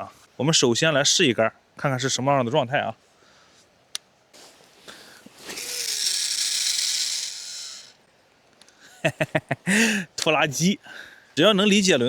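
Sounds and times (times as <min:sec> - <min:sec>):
reel spool spinning rattling buzz: 0:04.4 - 0:08.0
fishing reel click: 0:05.4 - 0:08.0.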